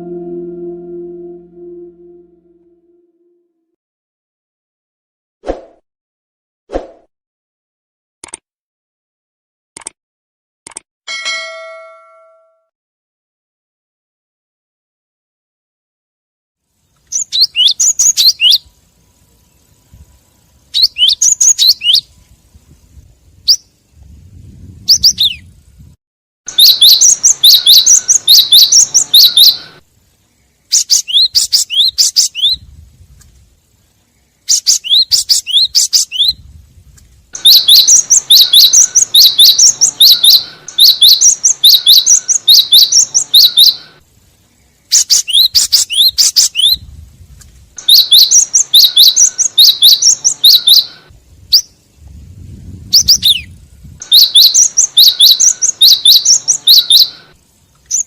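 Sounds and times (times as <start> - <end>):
bird rapid sharp chirping: 26.5 - 29.6, 30.7 - 32.6, 34.5 - 36.4, 37.4 - 43.8, 44.9 - 46.8, 47.8 - 50.9, 54.1 - 57.2.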